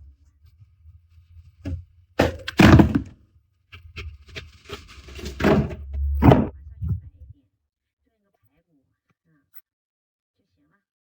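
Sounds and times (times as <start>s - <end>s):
knock: 1.7s - 3.1s, 5.2s - 6.6s.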